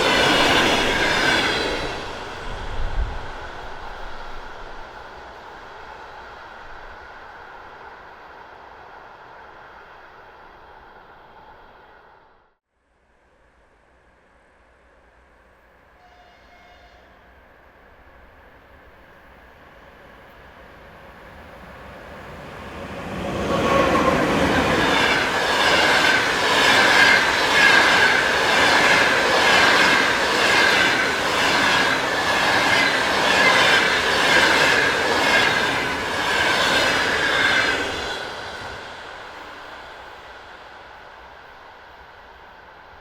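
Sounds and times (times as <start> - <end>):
train wheels clicking on rail joints: 21.5 - 39.7.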